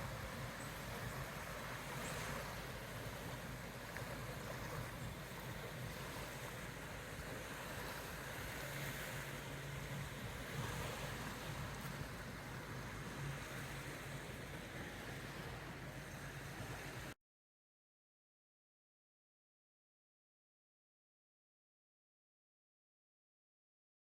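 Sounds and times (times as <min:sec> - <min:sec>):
waves: 0:00.0 - 0:17.2
wind: 0:00.0 - 0:17.2.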